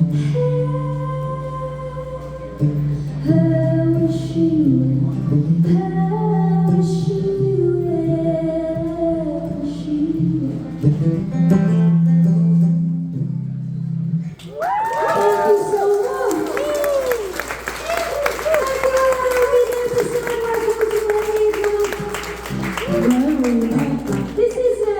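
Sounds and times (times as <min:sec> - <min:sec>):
woman singing long held notes: 0:00.0 - 0:10.8
acoustic guitar: 0:00.0 - 0:14.6, 0:18.6 - 0:24.9.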